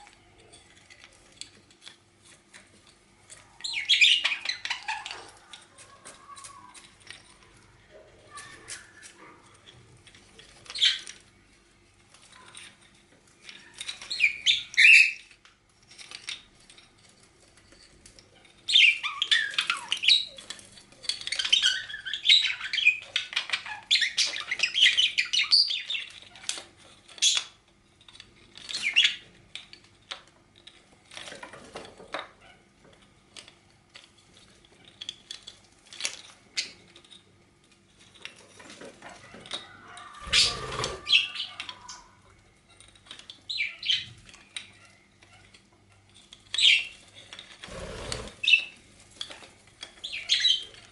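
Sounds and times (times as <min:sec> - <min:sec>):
bird chattering and squawking: 0:40.0 - 0:42.2.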